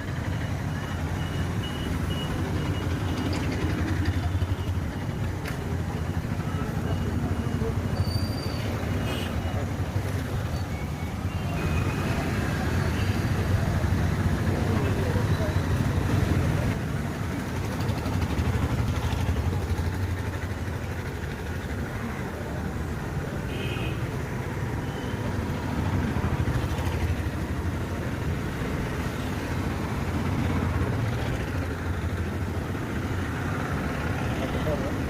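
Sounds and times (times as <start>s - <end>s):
road traffic rumble: 0.0s - 35.0s.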